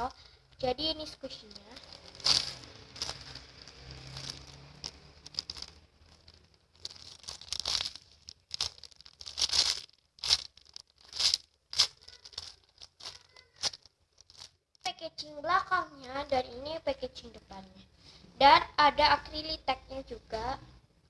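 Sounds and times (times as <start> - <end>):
plastic packaging crinkling: 0.0 - 14.9.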